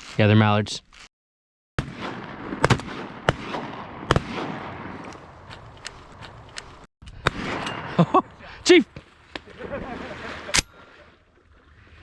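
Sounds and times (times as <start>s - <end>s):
shotgun blasts: 1.8s - 5.1s, 7.2s - 8.0s.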